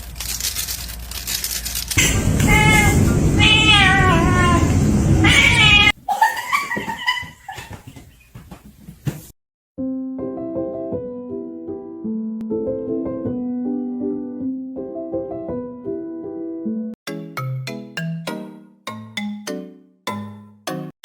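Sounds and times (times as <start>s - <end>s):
cat meow: 2.0s - 6.0s
loud noise: 2.0s - 6.0s
cat yowling: 2.0s - 6.4s.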